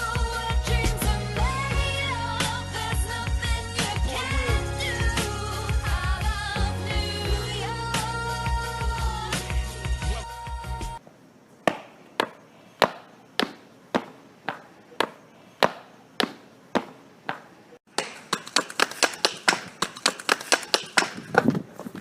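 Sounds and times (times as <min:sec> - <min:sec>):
sharp knocks like chopping: 0:11.6 - 0:17.4.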